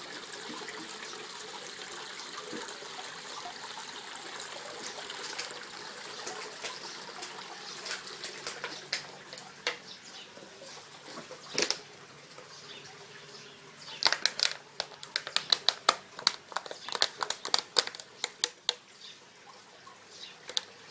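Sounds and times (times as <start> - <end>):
water trickling: 0.0 - 20.9
sharp clicks and taps: 14.0 - 18.8, 20.5 - 20.7.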